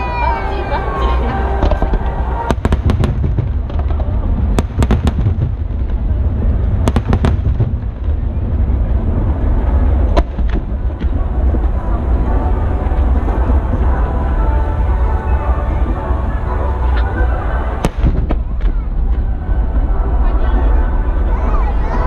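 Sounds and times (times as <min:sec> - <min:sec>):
deep rumble: 0:00.0 - 0:22.0
fireworks crackling: 0:00.8 - 0:19.4.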